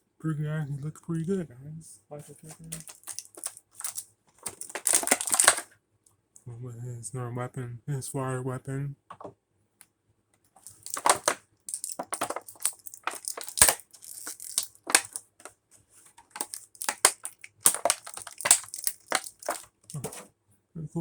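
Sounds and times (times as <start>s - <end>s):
plastic packaging crinkling: 2.4s - 5.6s, 10.6s - 15.5s, 16.2s - 20.2s.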